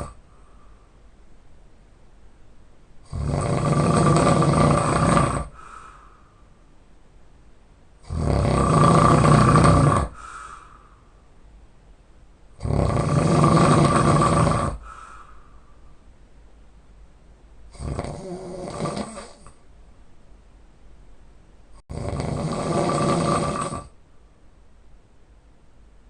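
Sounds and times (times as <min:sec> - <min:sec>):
man snoring heavily: 0:00.0 - 0:00.2, 0:03.0 - 0:05.8, 0:08.0 - 0:10.7, 0:12.6 - 0:15.1, 0:17.7 - 0:19.5, 0:21.9 - 0:24.0
faint breath: 0:00.0 - 0:01.1, 0:05.4 - 0:06.7, 0:10.0 - 0:11.4, 0:14.7 - 0:16.1.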